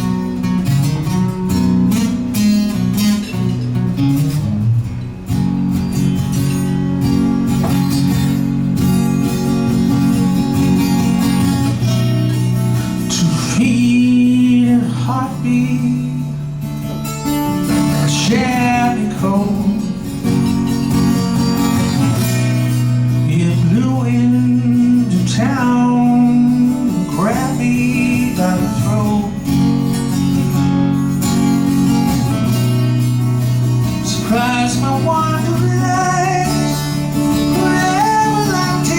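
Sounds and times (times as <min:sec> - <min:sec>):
acoustic guitar strummed chords: 0:00.0 - 0:38.9
sliding guitar melody: 0:00.0 - 0:38.9.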